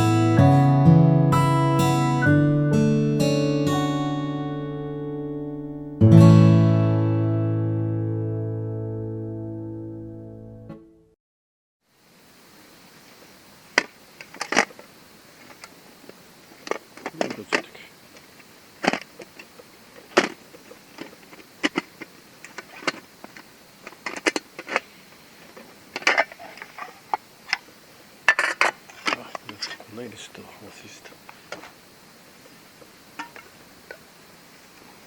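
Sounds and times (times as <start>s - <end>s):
faint steady hiss: 11.8s - 35.0s.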